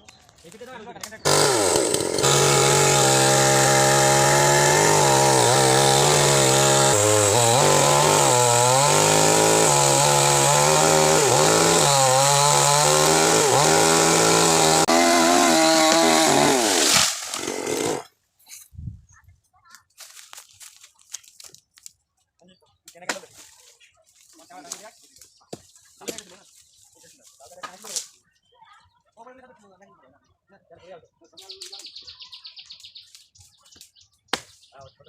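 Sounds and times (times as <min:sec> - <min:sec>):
chainsaw cutting wood: 0:01.2 - 0:18.2.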